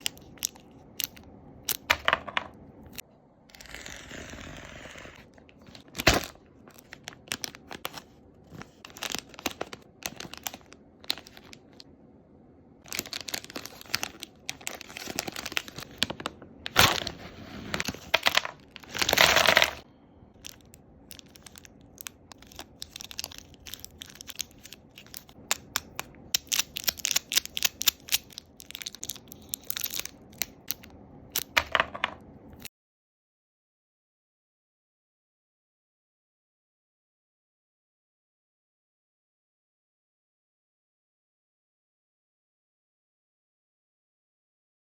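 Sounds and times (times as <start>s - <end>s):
wrappers crinkling and tearing: 5.5s - 11.8s, 12.9s - 19.8s, 20.4s - 31.5s
sharp clicks and crunches: 20.4s - 31.6s.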